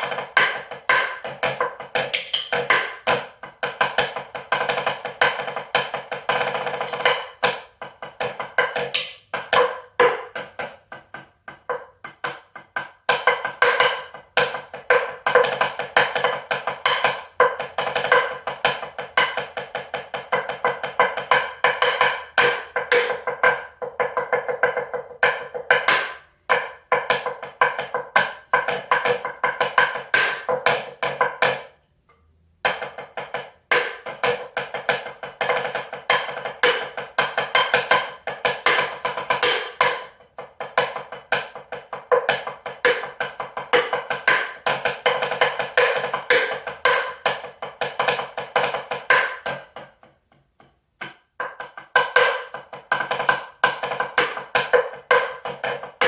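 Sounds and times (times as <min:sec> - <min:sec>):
woody hand percussion: 0:00.0 - 0:56.0.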